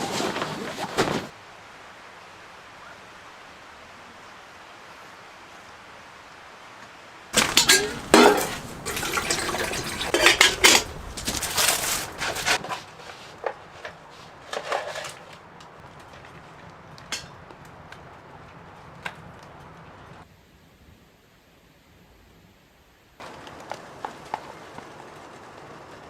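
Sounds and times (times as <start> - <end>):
cookware and utensils clinking: 7.4 - 12.8.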